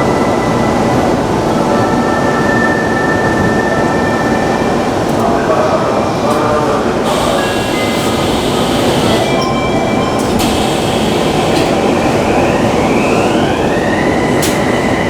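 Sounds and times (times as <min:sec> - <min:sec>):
train wheels rumbling on rail: 0:00.0 - 0:15.0
traction motor whine: 0:07.0 - 0:14.8.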